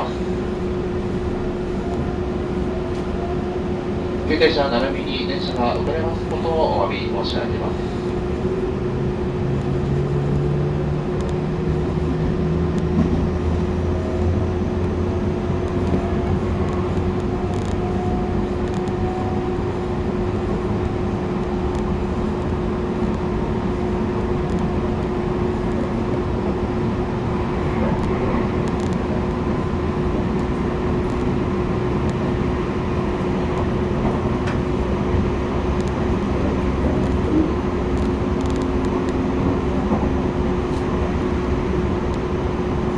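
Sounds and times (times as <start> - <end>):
train running noise: 0.0 - 42.9.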